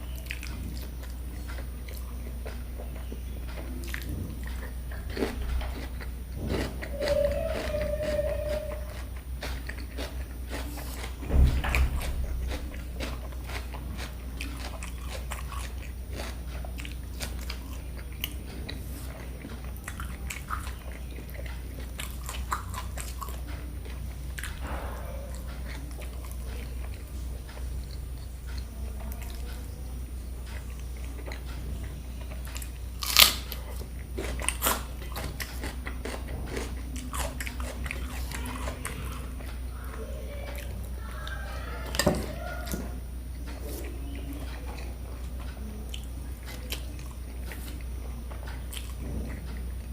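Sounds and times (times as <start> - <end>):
crunchy chewing and biting: 0.0 - 49.9
low hum: 0.0 - 49.9.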